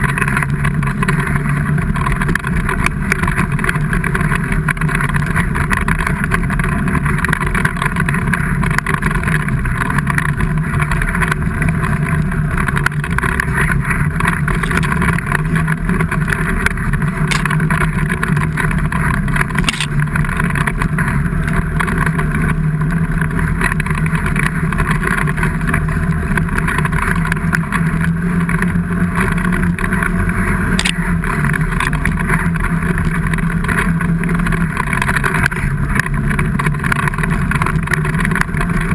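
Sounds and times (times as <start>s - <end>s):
engine running steadily: 0.0s - 38.9s.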